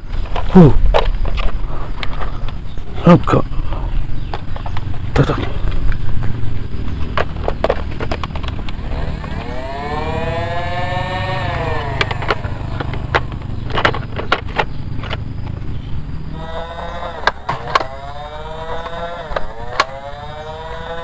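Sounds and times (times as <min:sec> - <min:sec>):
toy gun rising and falling tone: 0:08.7 - 0:13.4, 0:16.3 - 0:21.0
plastic clicks and knocks: 0:11.8 - 0:15.6.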